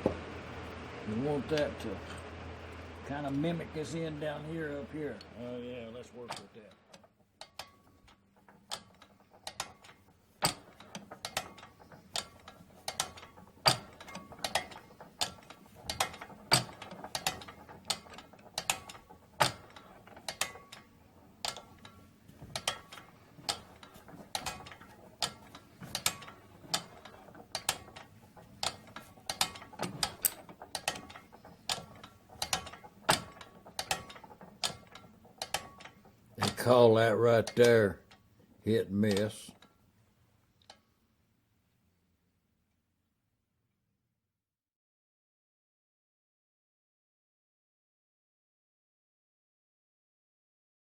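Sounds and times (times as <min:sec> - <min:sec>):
engine coasting clicks: 0:06.0 - 0:39.6.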